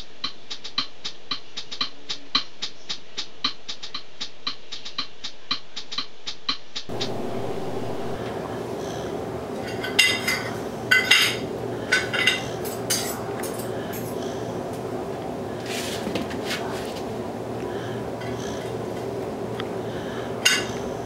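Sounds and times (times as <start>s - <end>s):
steady low hum: 6.6s - 21.0s
silverware clinking against dishes: 9.6s - 14.4s, 18.2s - 19.0s, 20.4s - 21.0s.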